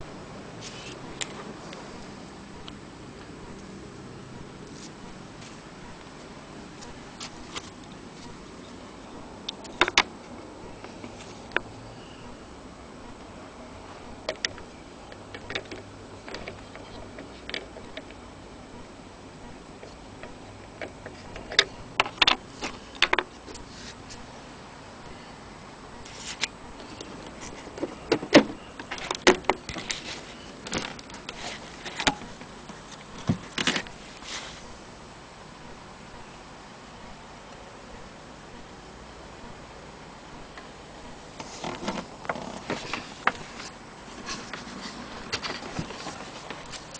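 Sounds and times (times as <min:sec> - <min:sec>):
faint high-pitched whine: 0:00.0 - 0:46.9
steady hiss: 0:00.1 - 0:46.9
clicks and knocks handling radio: 0:09.5 - 0:10.1.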